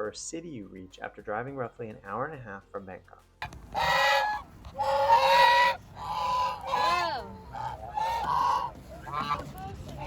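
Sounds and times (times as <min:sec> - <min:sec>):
honking animal calls: 0:03.7 - 0:10.0.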